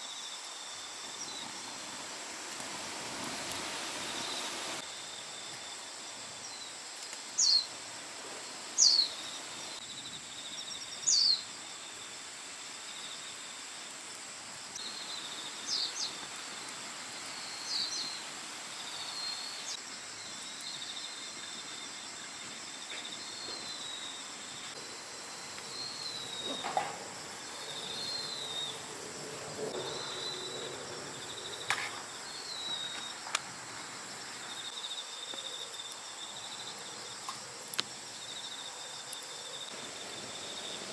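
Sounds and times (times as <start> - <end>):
insects trilling: 0.0 - 40.9
birds calling: 25.2 - 33.2.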